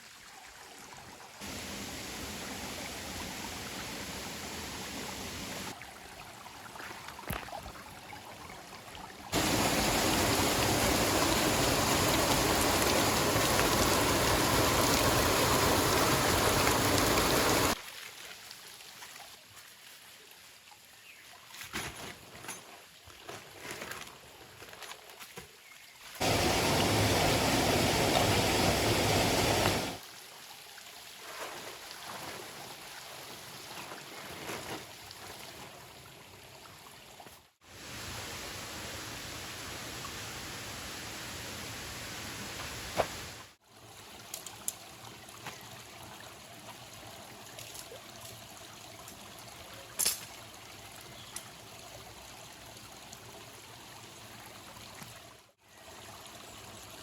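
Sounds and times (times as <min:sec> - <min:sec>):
stream water rushing: 0:01.4 - 0:08.1, 0:08.7 - 0:17.8, 0:26.2 - 0:30.0.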